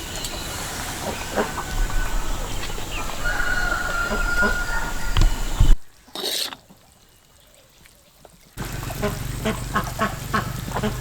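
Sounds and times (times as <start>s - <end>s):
ducks quacking: 0.9s - 4.7s, 8.6s - 11.0s
splashing water: 5.9s - 11.0s.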